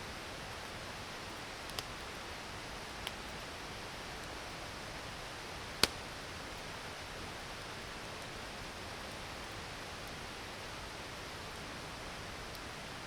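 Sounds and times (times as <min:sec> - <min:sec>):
campfire burning with hiss: 0:00.0 - 0:13.0
sharp pop from fire: 0:05.8 - 0:06.0.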